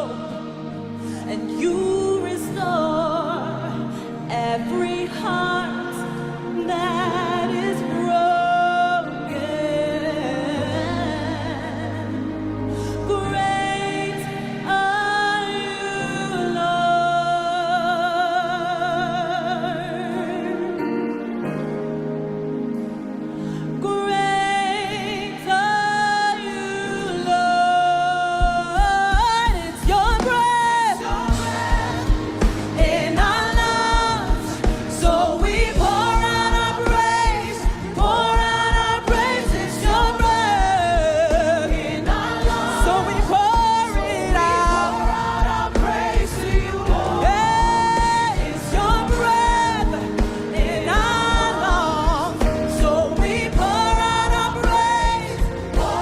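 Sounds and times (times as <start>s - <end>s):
singing over a band: 28.2s - 56.0s
steady drum beat: 31.0s - 56.0s.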